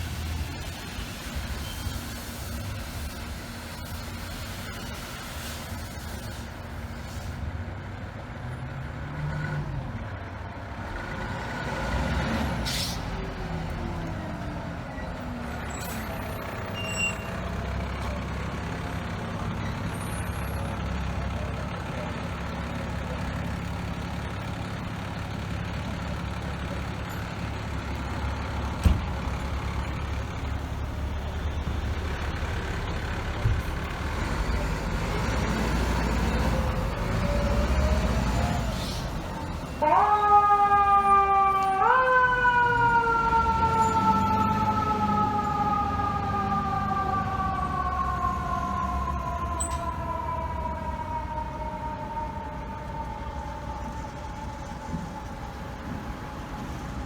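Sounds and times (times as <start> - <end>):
diesel engine running: 0.0 - 9.0, 9.7 - 57.0
air brake hiss: 12.6 - 13.2, 38.7 - 39.2.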